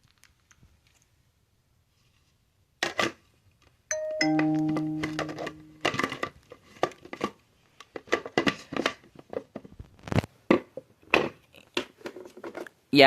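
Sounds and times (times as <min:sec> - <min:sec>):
brief ringing tone: 0:03.9 - 0:05.9
plastic parts clicking and rustling: 0:05.8 - 0:09.7.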